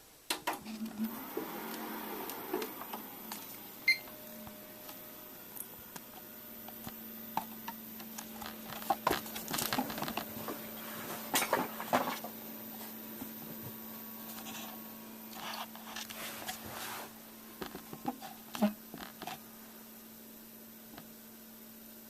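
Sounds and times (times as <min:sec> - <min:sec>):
computer humming: 0:00.0 - 0:22.0.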